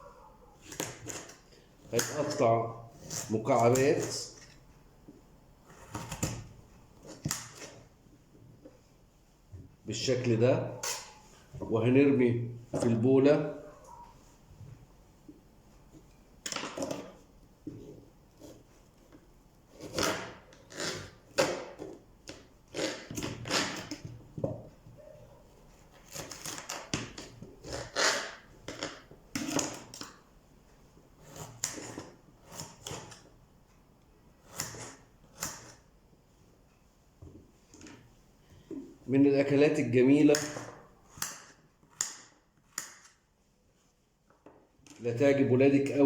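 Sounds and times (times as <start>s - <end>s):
knife chopping on cutting board: 34.4s - 35.8s.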